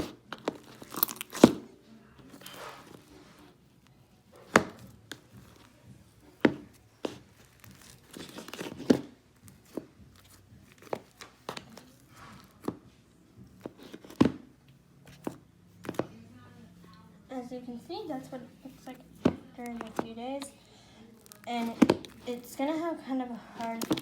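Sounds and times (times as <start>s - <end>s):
dried slime crust cracking: 0.3s - 1.6s, 21.1s - 22.2s.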